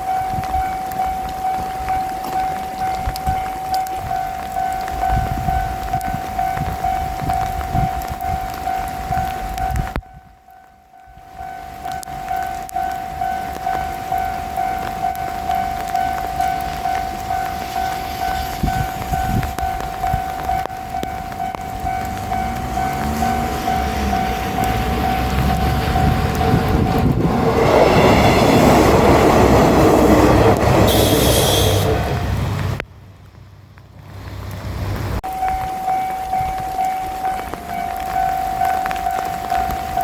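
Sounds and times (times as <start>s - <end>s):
level-crossing bell ringing: 0.0s - 7.2s, 10.1s - 18.4s, 19.2s - 27.0s, 35.2s - 40.0s
diesel railcar passing: 0.0s - 9.8s, 10.6s - 40.0s.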